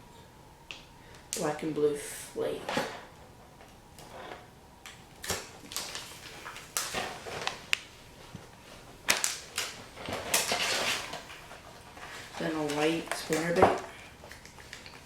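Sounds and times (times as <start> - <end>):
plastic packaging clicks and crinkles: 4.8 - 15.0.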